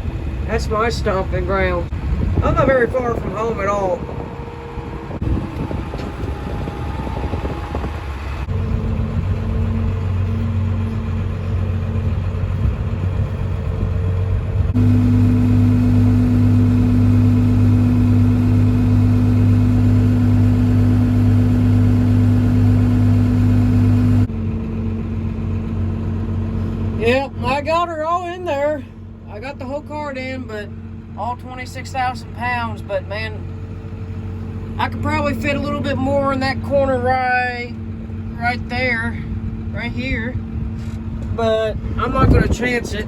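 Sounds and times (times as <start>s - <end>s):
tractor engine running: 0.0s - 43.0s
unloading auger running: 14.8s - 24.3s.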